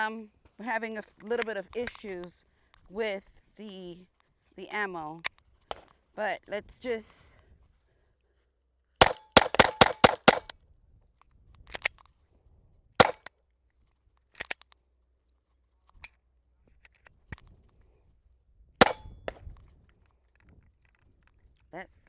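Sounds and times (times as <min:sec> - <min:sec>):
pistol shots: 0:09.0 - 0:10.5, 0:13.0 - 0:13.3, 0:18.8 - 0:19.2.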